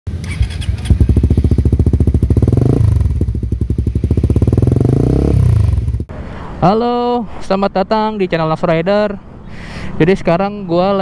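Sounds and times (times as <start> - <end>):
motorcycle engine running: 0.1 - 6.1.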